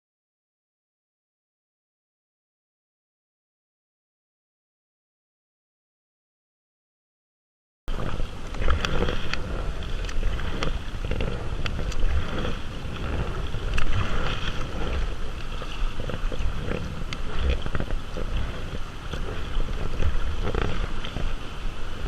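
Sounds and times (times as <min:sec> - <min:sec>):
water lapping around kayak: 0:07.9 - 0:22.0
wind rumbling on microphone: 0:07.9 - 0:22.0.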